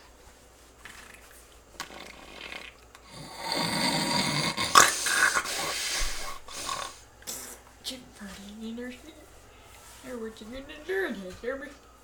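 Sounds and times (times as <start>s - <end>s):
person snoring: 1.8s - 7.7s.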